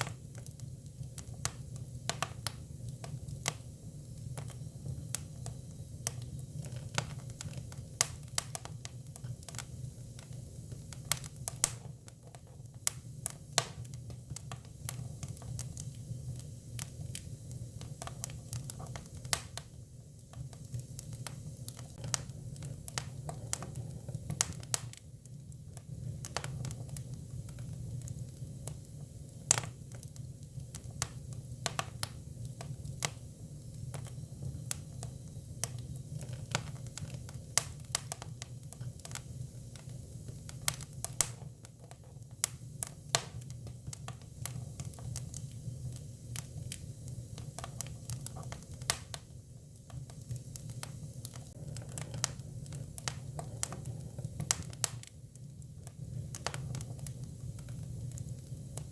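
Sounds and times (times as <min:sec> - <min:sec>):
firewood popping and crackling: 0:20.3 - 0:49.2, 0:49.9 - 0:58.9.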